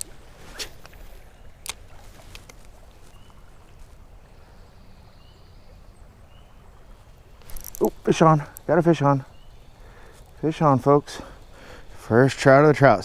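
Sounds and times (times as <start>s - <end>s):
rushing stream: 0.0s - 13.0s
sharp clicks: 1.6s - 2.7s, 7.4s - 8.8s.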